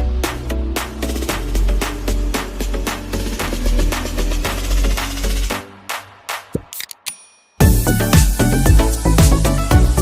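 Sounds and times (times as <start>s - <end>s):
electronic music with heavy bass: 0.0s - 6.7s, 7.6s - 10.0s.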